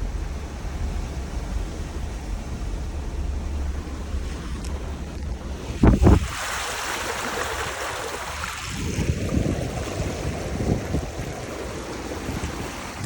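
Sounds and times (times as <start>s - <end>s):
churning rumble: 0.0s - 13.0s
water splashing around tyres: 4.3s - 13.0s.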